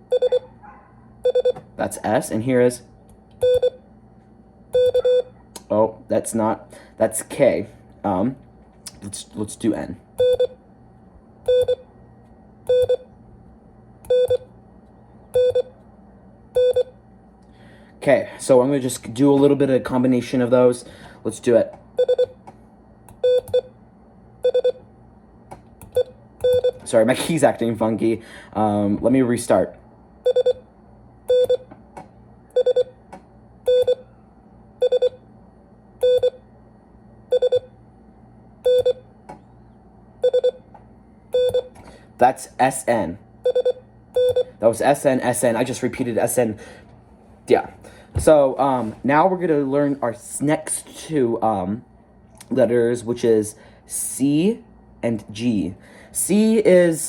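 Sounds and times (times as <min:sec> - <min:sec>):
morse code beeps: 0:00.1 - 0:00.5, 0:01.2 - 0:01.6, 0:03.4 - 0:03.8, 0:04.8 - 0:05.3, 0:10.2 - 0:10.6, 0:11.5 - 0:11.8, 0:12.7 - 0:13.1, 0:14.1 - 0:14.4, 0:15.4 - 0:15.7, 0:16.6 - 0:16.9, 0:22.0 - 0:22.4, 0:23.2 - 0:23.7, 0:24.4 - 0:24.8, 0:26.0 - 0:26.8, 0:30.2 - 0:30.6, 0:31.3 - 0:31.7, 0:32.6 - 0:32.9, 0:33.7 - 0:34.0, 0:34.8 - 0:35.2, 0:36.0 - 0:36.4, 0:37.3 - 0:37.7, 0:38.6 - 0:39.0, 0:40.2 - 0:40.6, 0:41.4 - 0:41.7, 0:43.4 - 0:44.6.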